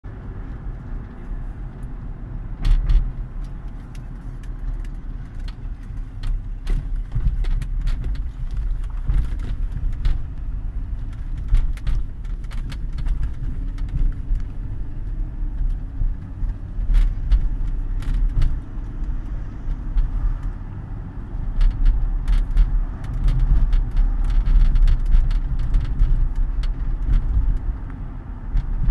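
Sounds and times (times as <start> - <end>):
road rumble: 0.0 - 28.9
car interior creaks and rattles: 0.1 - 28.9.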